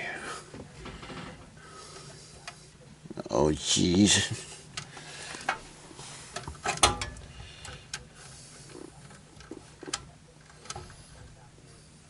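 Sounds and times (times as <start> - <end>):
faint low hum: 0.0 - 12.0
tools and parts clicking and knocking: 6.4 - 7.8.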